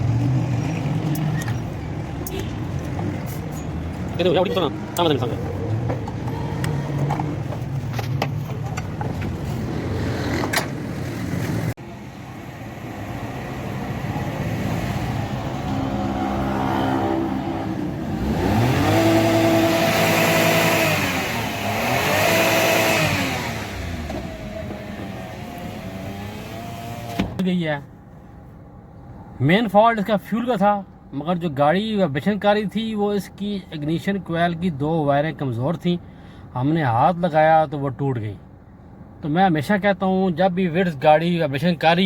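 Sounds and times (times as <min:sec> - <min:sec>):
car engine idling and revving: 0:00.0 - 0:29.4.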